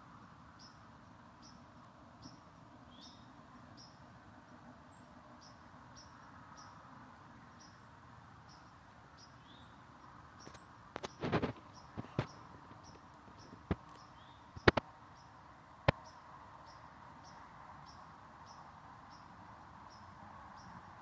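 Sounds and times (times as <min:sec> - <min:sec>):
low steady hiss: 0:00.0 - 0:21.0
sharp clicks: 0:10.4 - 0:14.9, 0:15.8 - 0:16.0.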